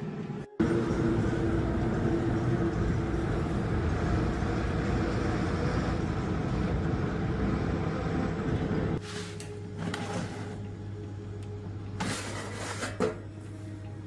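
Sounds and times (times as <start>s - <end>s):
steady machine noise: 0.0s - 9.0s.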